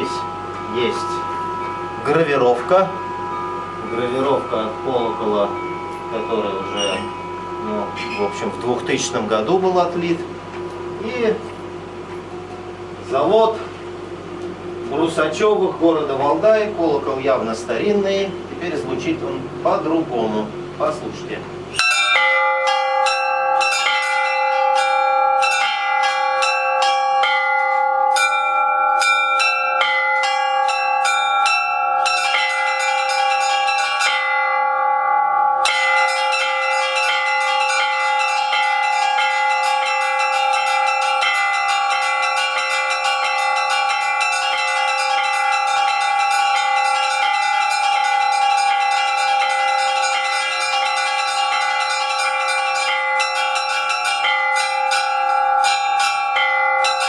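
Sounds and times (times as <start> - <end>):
small high bells struck quickly: 0.0 - 11.2, 21.7 - 57.0
larger bells ringing: 0.0 - 57.0.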